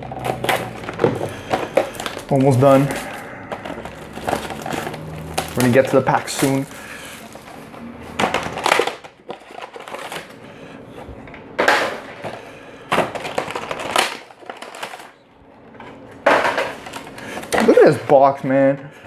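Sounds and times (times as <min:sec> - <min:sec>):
cardboard scraping: 0:00.0 - 0:10.4
plastic wrap crinkling: 0:00.0 - 0:10.5, 0:12.9 - 0:18.0.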